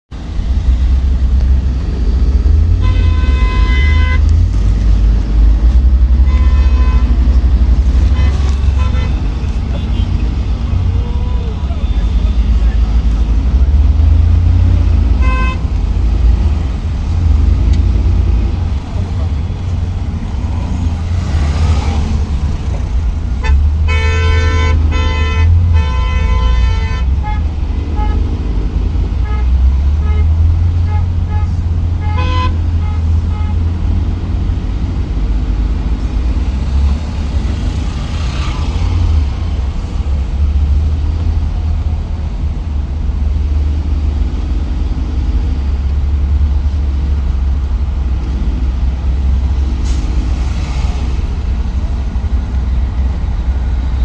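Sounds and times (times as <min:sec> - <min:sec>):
minibus engine and road rumble: 0:00.1 - 0:54.0
vehicle horn: 0:02.8 - 0:04.4, 0:06.2 - 0:10.3, 0:15.1 - 0:15.8, 0:23.4 - 0:28.3, 0:29.2 - 0:33.7.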